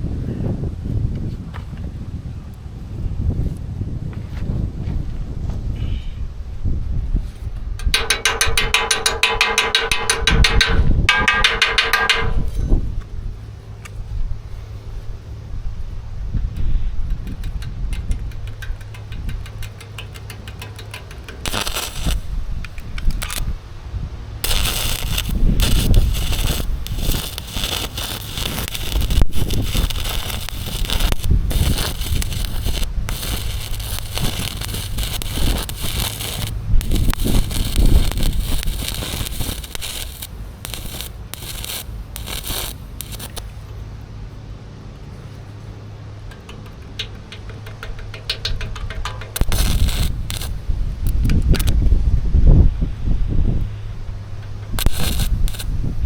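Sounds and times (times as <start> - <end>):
steady low hum: 6.3 - 56.0
arc welding crackling: 7.8 - 12.5, 16.6 - 23.6, 24.4 - 43.7, 46.3 - 51.8, 54.5 - 56.0.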